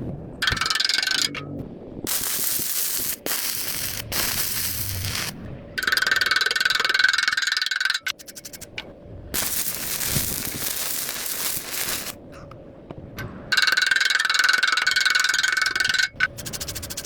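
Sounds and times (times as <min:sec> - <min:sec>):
welding arc crackling hiss: 0:02.1 - 0:05.4, 0:09.4 - 0:12.2.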